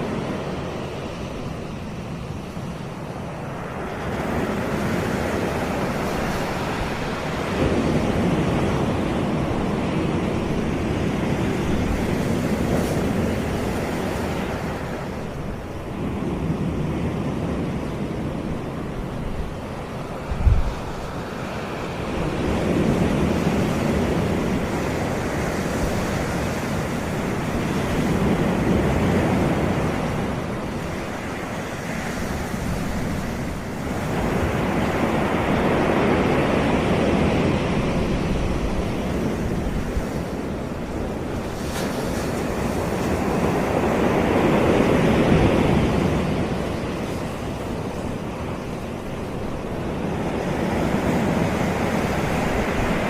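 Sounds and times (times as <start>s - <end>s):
ocean surf washing onto beach: 0.0s - 53.0s.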